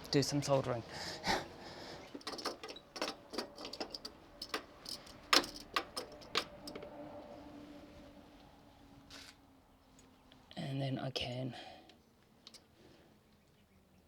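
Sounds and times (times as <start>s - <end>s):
faint background noise: 0.0s - 14.0s
clicks of tools and wires handled: 2.0s - 7.0s, 12.4s - 12.7s.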